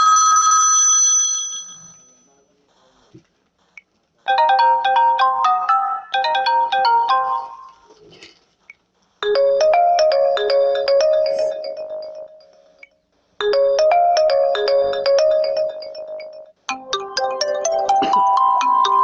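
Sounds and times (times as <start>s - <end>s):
bright melodic ringtone: 4.3s - 7.9s, 9.2s - 12.8s, 13.4s - 19.0s
ringtone with low held notes: 4.3s - 7.9s, 9.2s - 19.0s.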